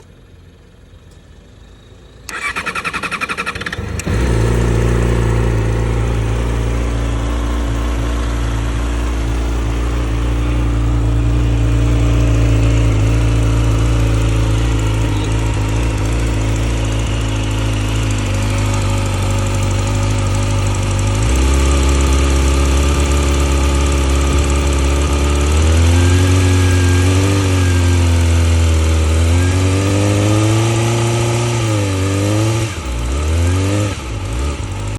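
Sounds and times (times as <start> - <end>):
motorcycle engine idling and revving: 0.0 - 34.9
electric starter cranking engine: 2.3 - 7.2.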